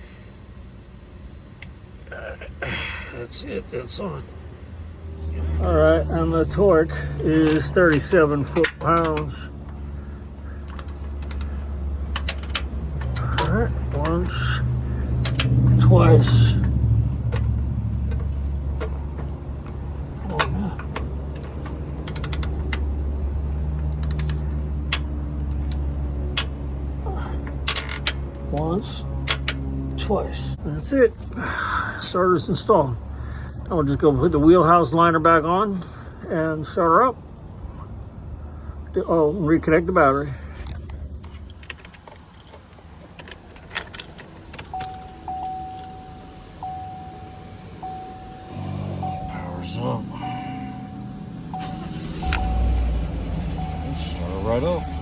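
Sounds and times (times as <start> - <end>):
socket wrench clicking: 21.0 - 22.9
steady low hum: 40.1 - 55.0
steady electronic tone: 44.9 - 55.0.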